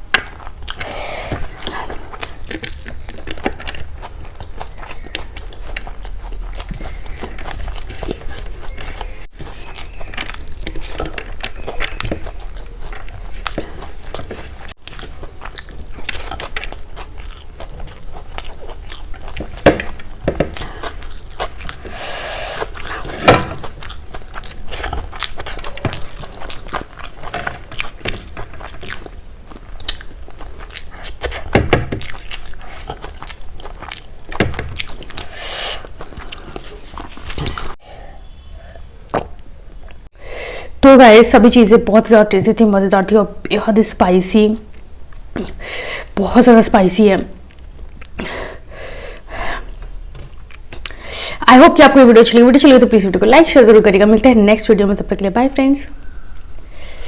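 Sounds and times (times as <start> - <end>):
chewing with wet mouth sounds: 0.0 - 40.2, 47.4 - 51.2.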